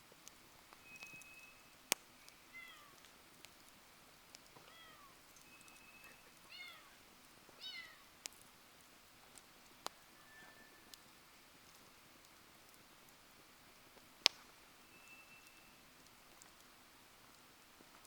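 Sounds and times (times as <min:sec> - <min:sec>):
wood fire crackling and popping: 0:00.0 - 0:18.0
thin steady whistles: 0:00.7 - 0:02.6, 0:05.3 - 0:06.5, 0:09.9 - 0:11.4, 0:14.5 - 0:16.5.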